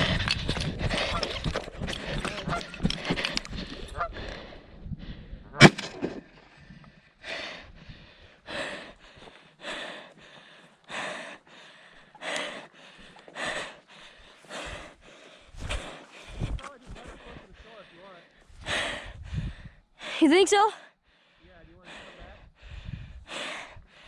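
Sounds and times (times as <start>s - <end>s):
person breathing hard: 0.0s - 5.5s, 6.5s - 24.0s.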